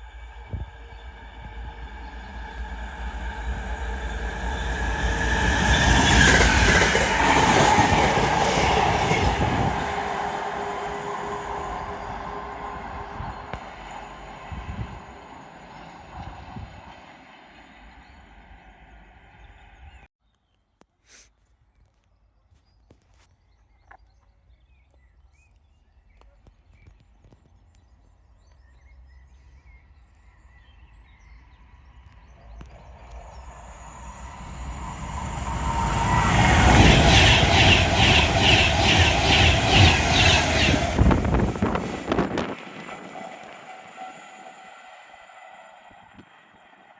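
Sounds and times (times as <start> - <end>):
railway noise: 0.0 - 20.1, 31.5 - 46.9
train passing: 0.0 - 20.1, 31.6 - 46.9.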